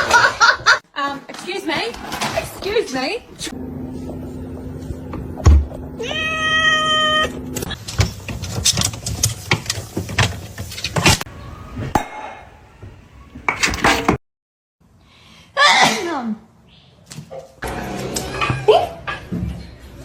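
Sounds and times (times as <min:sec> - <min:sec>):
cat meowing: 0:06.0 - 0:07.4.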